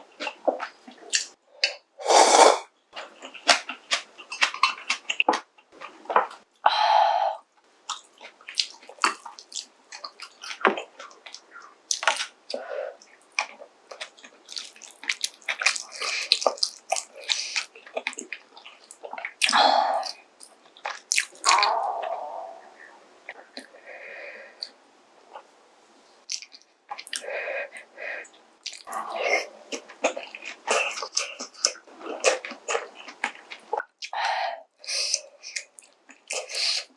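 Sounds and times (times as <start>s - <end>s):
slurping: 1.1s - 3.6s, 28.6s - 33.8s
wet chewing and lip smacks: 7.9s - 21.7s, 26.3s - 27.9s, 28.6s - 34.2s, 34.8s - 36.9s.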